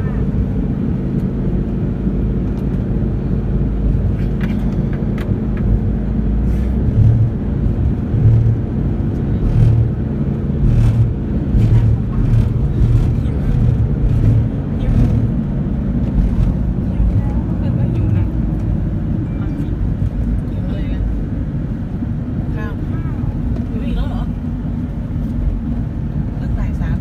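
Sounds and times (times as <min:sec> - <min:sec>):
low engine rumble: 0:00.0 - 0:27.0
pulsing low throb: 0:05.1 - 0:20.4.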